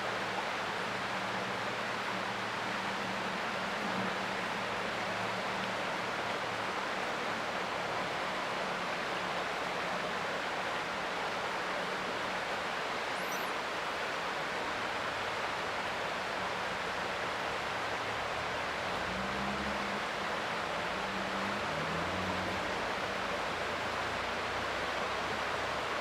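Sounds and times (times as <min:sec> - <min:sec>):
creek water flowing: 0:00.0 - 0:26.0
faint high chirp: 0:13.1 - 0:13.6.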